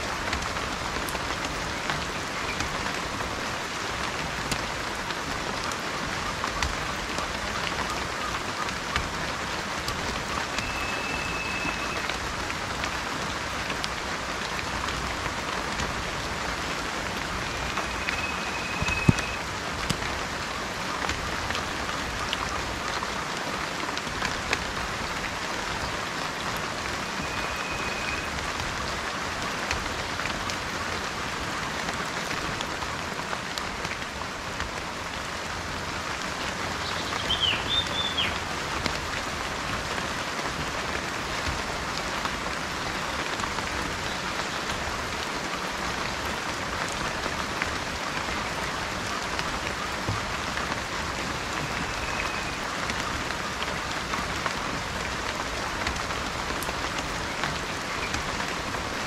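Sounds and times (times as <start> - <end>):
rain pattering: 0.0 - 59.0
bird whistling: 10.6 - 12.1, 17.5 - 19.4, 27.2 - 28.3, 36.9 - 38.4, 51.8 - 52.5
bird chirping: 36.8 - 38.4.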